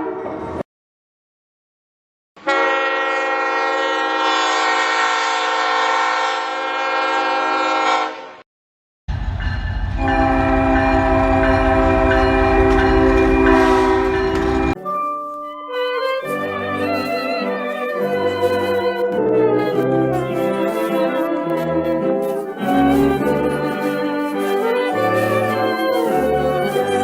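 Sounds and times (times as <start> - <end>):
locomotive horn blasts: 2.4 - 8.4, 10.0 - 14.8
music: 12.0 - 27.0.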